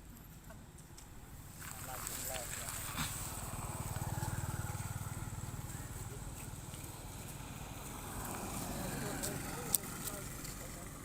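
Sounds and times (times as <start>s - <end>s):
small engine running: 2.5s - 11.0s.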